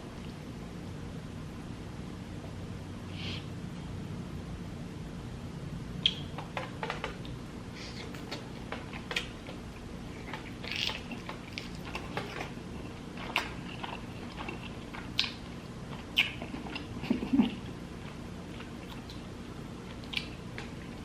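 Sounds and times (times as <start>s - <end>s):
low steady hum: 0.0s - 21.0s
close chewing and mouth sounds: 6.0s - 21.0s.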